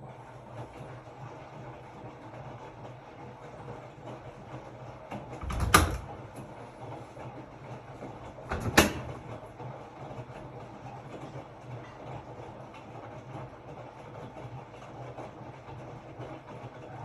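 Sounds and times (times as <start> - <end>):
washing machine hum: 0.0 - 17.0
washing machine thuds: 5.2 - 6.4, 8.3 - 9.4.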